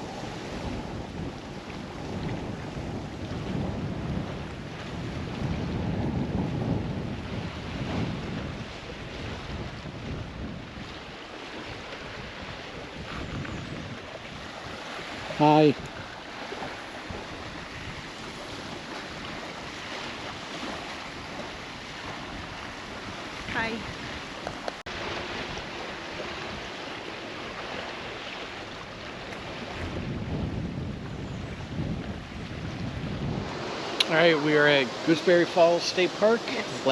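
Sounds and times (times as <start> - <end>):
steady rushing outdoor noise: 0.0 - 10.7, 28.8 - 36.9
waves washing on shore: 0.0 - 36.9
wind buffeting microphone: 0.0 - 36.9.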